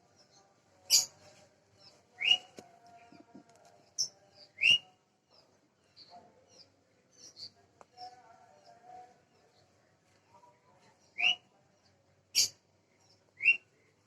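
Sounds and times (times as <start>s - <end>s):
small bird sharp calls: 0.9s - 1.2s, 12.3s - 12.6s.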